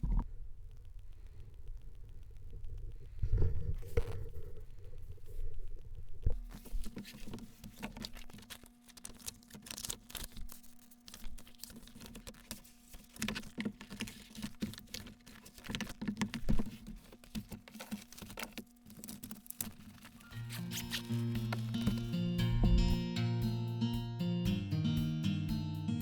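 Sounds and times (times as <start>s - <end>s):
faint steady hum: 0.0s - 26.0s
light clicks and taps at a desk: 0.7s - 20.2s.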